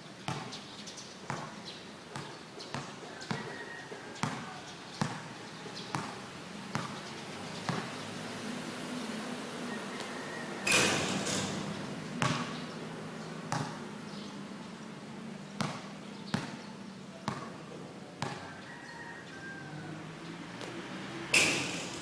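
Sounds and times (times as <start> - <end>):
basketball bouncing on a court: 0.2 - 0.6, 1.3 - 3.5, 4.2 - 7.0, 7.6 - 8.0, 12.2 - 12.6, 13.5 - 13.9, 15.6 - 17.6, 18.2 - 18.5.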